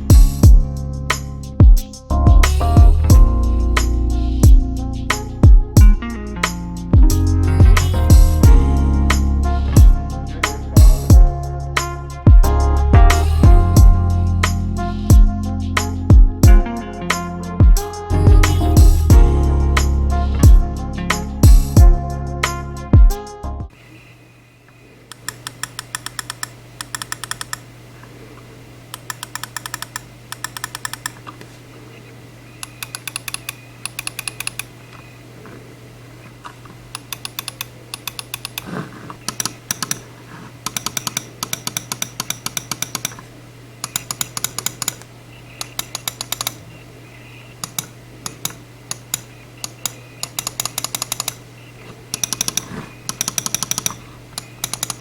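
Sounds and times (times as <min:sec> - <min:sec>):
low steady hum: 0:00.0 - 0:25.3
mouse clicking rapidly: 0:25.1 - 0:27.6, 0:28.9 - 0:31.2, 0:32.6 - 0:34.7, 0:37.0 - 0:43.2, 0:43.8 - 0:46.6, 0:47.6 - 0:51.4, 0:52.1 - 0:55.0.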